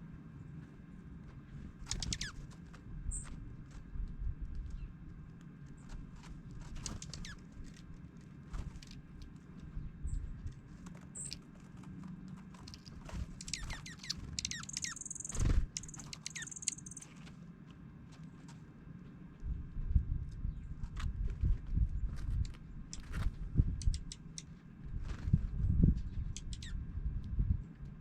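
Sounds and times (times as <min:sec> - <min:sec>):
bird chip and twitter notes: 0:01.9 - 0:02.4, 0:06.8 - 0:07.4, 0:13.4 - 0:17.1, 0:23.8 - 0:24.5, 0:26.2 - 0:26.8.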